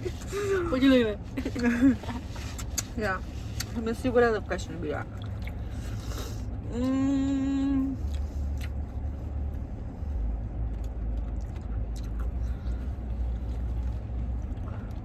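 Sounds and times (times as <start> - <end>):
low steady rumble: 0.0 - 15.0
person humming: 6.7 - 8.0.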